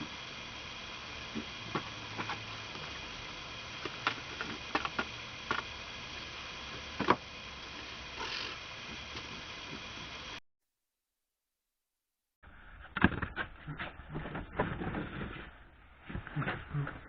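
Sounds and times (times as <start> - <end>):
faint steady hum: 0.0 - 10.4.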